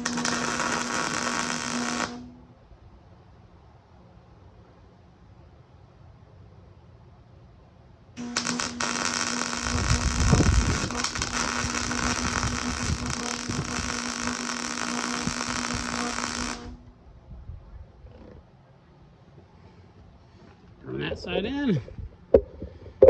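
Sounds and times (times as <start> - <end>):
arc welding crackling sizzle: 0.0 - 2.5, 8.2 - 16.9
low rumble: 16.7 - 18.5.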